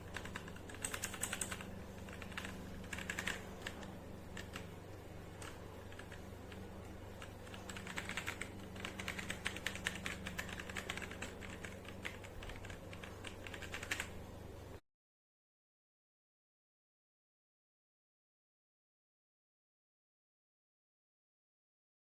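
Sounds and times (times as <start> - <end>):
mechanical keyboard typing: 0.0 - 14.3
faint hum: 0.0 - 14.8.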